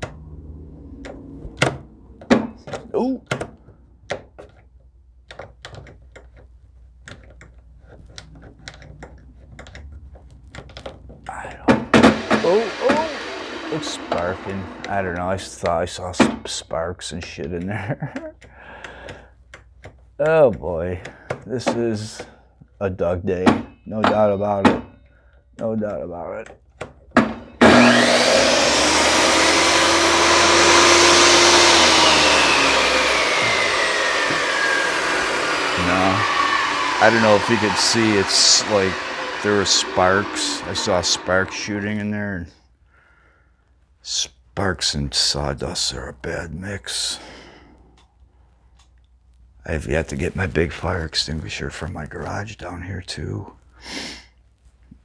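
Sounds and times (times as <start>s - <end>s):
electric motor humming: 11.3s - 15.3s, 27.6s - 42.0s.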